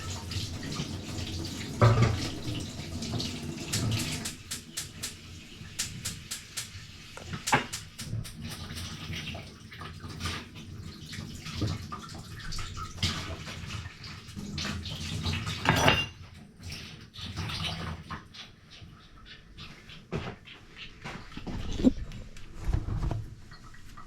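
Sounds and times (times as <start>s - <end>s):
dishes clattering: 1.8s - 2.4s, 15.5s - 16.3s
dishes clinking and knocking: 1.8s - 2.4s, 15.6s - 16.2s.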